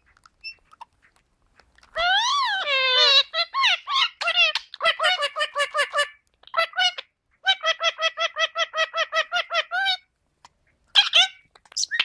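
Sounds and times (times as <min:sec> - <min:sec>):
parakeet calling: 0:02.0 - 0:10.0, 0:10.9 - 0:12.0.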